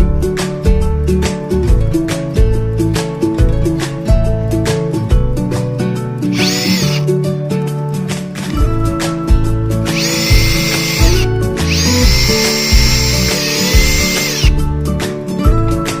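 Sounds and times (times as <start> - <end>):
background music with beat: 0.0 - 16.0
drill whine: 6.3 - 7.0, 9.9 - 14.6.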